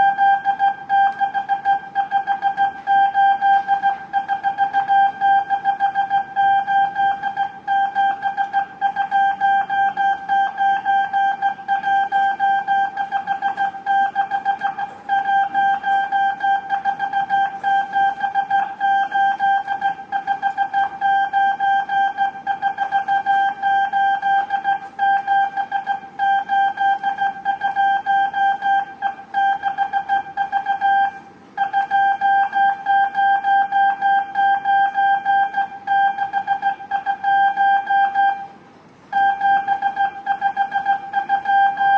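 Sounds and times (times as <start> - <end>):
morse code beeps: 0.0 - 38.5, 39.1 - 41.9.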